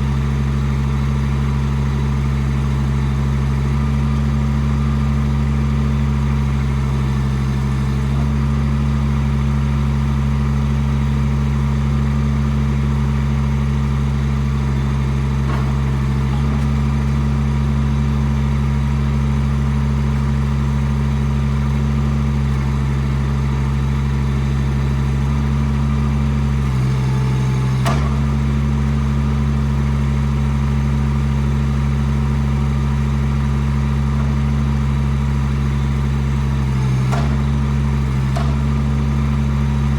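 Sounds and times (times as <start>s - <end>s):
excavator engine running: 0.0s - 39.9s
hydraulics working: 12.3s - 30.0s, 33.0s - 39.9s.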